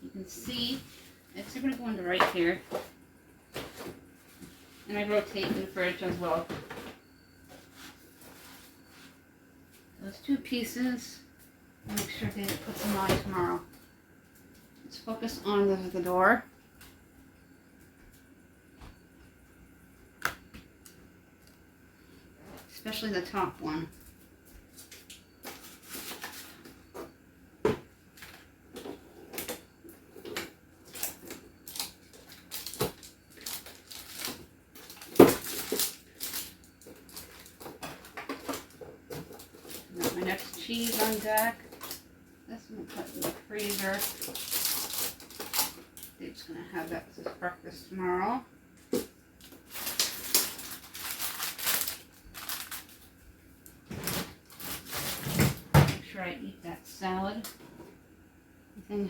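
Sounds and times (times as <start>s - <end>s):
food items clattering in fridge door: 24.9s - 42.0s, 53.8s - 56.1s
plastic packaging crinkling: 30.8s - 42.0s, 42.9s - 46.2s, 49.4s - 55.3s.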